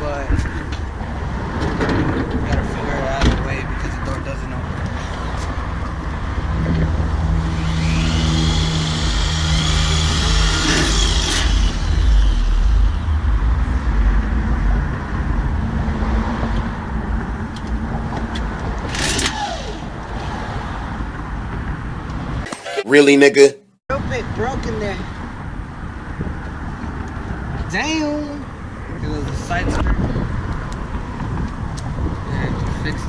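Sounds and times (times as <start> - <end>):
engine whine: 0.0 - 22.2
car engine running: 6.8 - 16.0
falling tone: 6.9 - 17.2
sharp noisy burst: 7.4 - 15.4.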